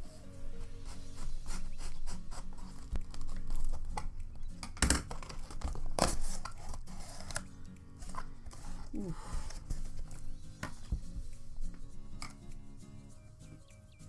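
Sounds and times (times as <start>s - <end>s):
paper and plastic rustling: 0.9s - 4.1s, 4.7s - 12.4s
packaging ripping: 2.3s - 4.1s, 4.7s - 10.2s.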